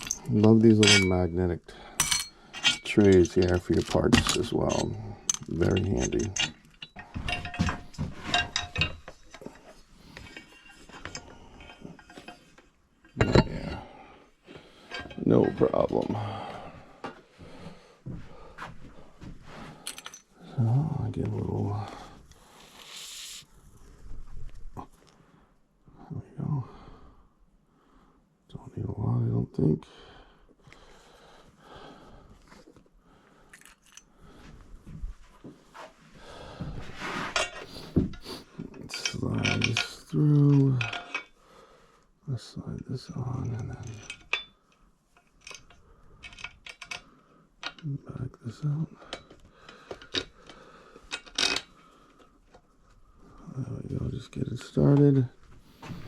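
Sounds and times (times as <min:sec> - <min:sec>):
metal parts and tools clinking: 0:00.0 - 0:01.4, 0:02.0 - 0:14.0, 0:14.8 - 0:16.3, 0:19.8 - 0:20.4, 0:33.5 - 0:34.1, 0:37.2 - 0:41.4, 0:42.8 - 0:44.6, 0:45.2 - 0:48.0, 0:49.1 - 0:51.7.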